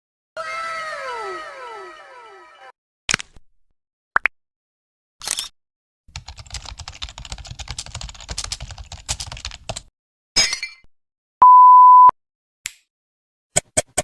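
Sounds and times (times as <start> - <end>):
high censor bleep: 11.4 - 12.1.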